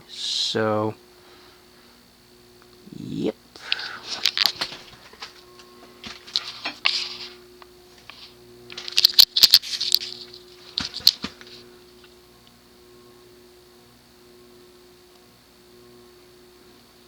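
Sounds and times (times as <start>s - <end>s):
ceiling fan motor humming: 0.0s - 17.0s
rustling and clicking handling noise: 3.7s - 12.2s.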